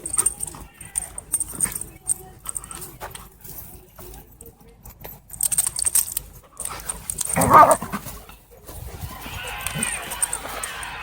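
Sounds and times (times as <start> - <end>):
dogs panting and scuffling: 0.0 - 11.0
dog vocalization: 6.7 - 8.0.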